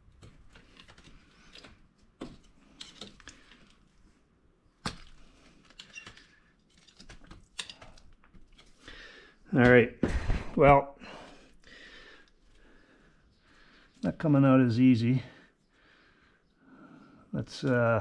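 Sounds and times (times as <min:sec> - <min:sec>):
pry tool clicking and scraping: 0:00.2 - 0:03.8, 0:04.8 - 0:08.7.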